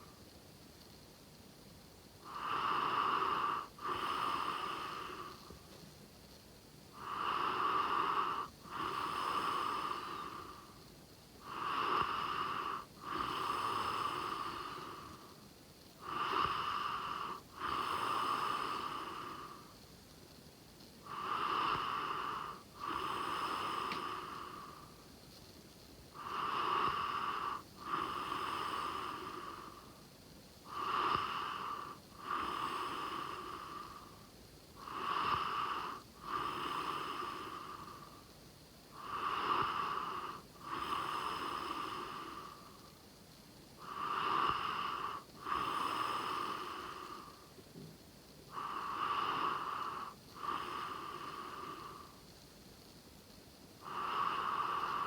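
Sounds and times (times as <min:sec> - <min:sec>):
person snoring: 0:07.0 - 0:10.7, 0:11.4 - 0:15.2, 0:16.0 - 0:19.6, 0:21.1 - 0:24.9, 0:26.2 - 0:29.9, 0:30.7 - 0:34.2, 0:34.8 - 0:38.1, 0:39.0 - 0:42.7, 0:43.8 - 0:47.4, 0:48.5 - 0:52.2, 0:53.8 - 0:55.0.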